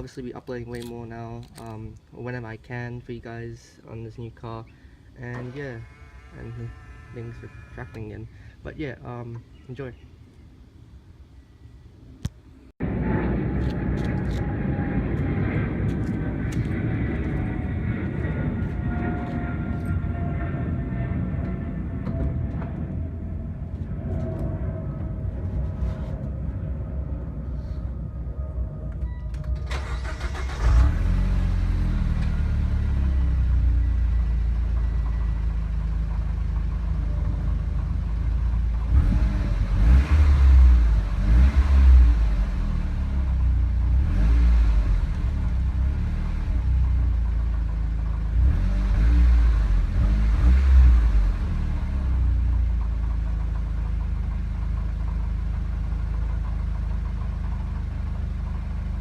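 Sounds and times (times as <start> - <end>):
car engine starting and revving: 28.9 - 57.5.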